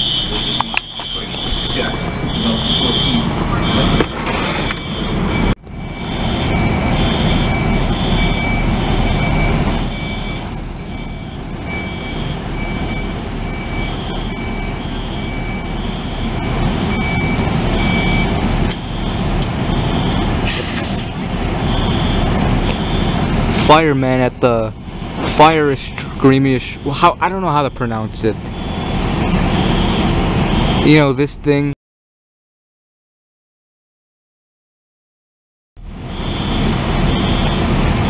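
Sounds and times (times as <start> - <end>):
fire alarm pulsing high tone: 0.0 - 20.5, 21.4 - 23.8, 26.8 - 31.1, 35.8 - 38.0.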